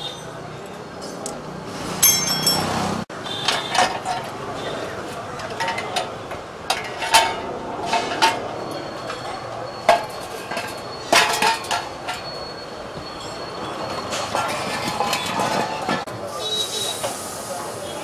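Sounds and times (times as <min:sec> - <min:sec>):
steady background noise: 0:00.0 - 0:18.0
metal clanks and knocks: 0:03.4 - 0:04.4, 0:05.4 - 0:12.4, 0:14.0 - 0:16.1.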